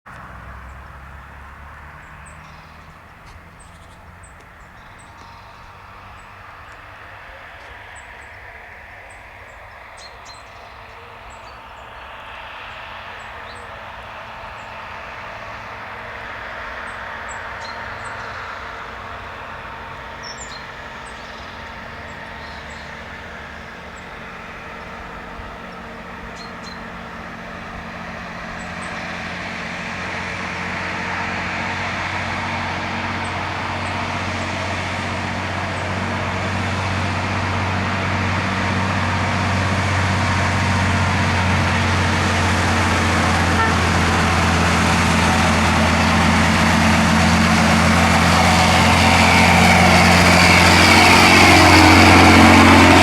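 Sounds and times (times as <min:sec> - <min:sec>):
truck petrol engine running: 0:00.0 - 0:53.0.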